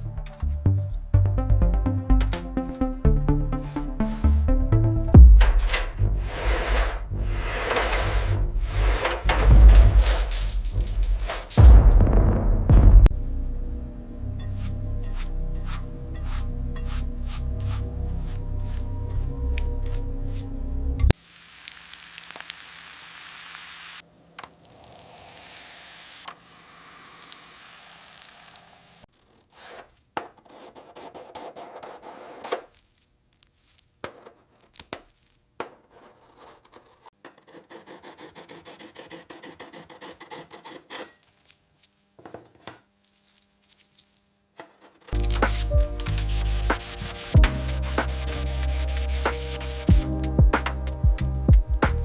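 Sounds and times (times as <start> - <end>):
hand scraping toy car: 6.2 - 9.4, 33.4 - 41.6
quick sanding strokes: 14.6 - 19.3, 45.3 - 49.9.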